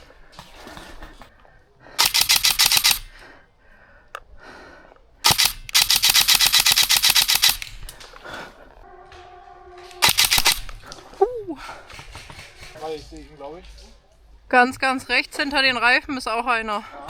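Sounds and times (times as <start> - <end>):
airsoft gun bursts: 1.9 - 3.4, 5.2 - 8.5, 10.0 - 12.7.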